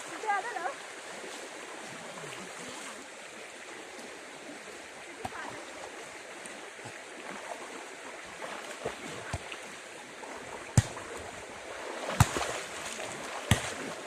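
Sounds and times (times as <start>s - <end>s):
river water running: 0.0s - 14.0s
sharp knocks or splashes: 5.2s - 5.8s, 8.3s - 14.0s.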